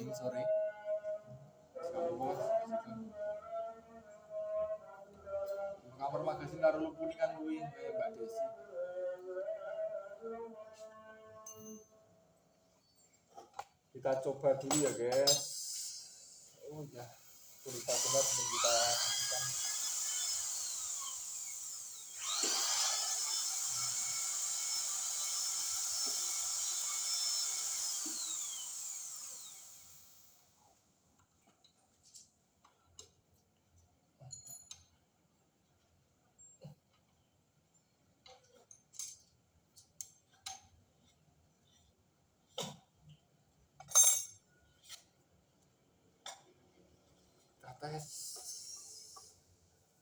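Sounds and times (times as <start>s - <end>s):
metal lathe whine: 17.2s - 30.4s.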